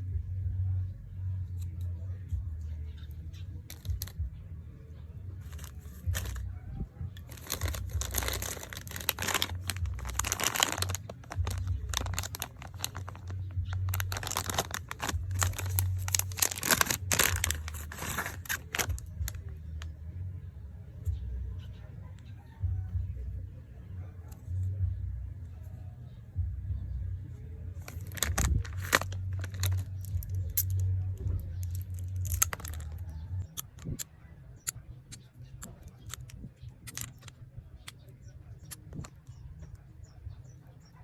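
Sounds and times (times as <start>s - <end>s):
plastic packaging crinkling and tearing: 3.7s - 4.2s, 5.4s - 6.4s, 7.2s - 19.5s, 27.8s - 30.9s, 31.6s - 33.2s
plastic rustling: 3.7s - 4.2s, 5.4s - 6.4s, 7.2s - 19.5s, 27.8s - 30.9s, 31.6s - 33.2s.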